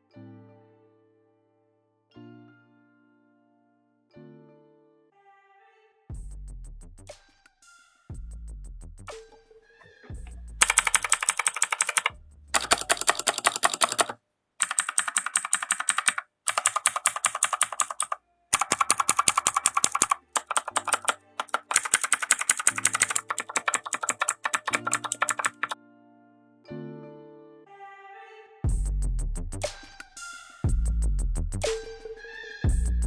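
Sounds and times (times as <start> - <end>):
faint background music: 0.0 - 13.2, 18.2 - 33.0
mechanical keyboard typing: 10.6 - 25.8.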